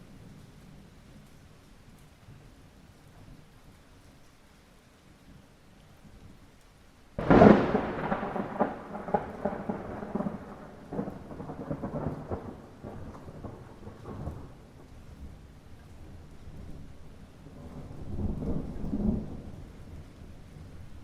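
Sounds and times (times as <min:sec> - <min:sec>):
light rain falling: 0:00.0 - 0:21.0
thunderclap rumbling: 0:07.2 - 0:15.5, 0:16.5 - 0:21.0.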